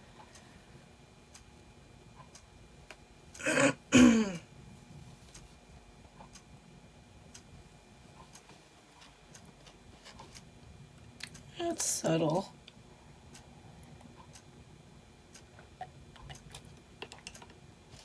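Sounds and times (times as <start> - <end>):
woman clearing her throat: 3.4 - 4.4.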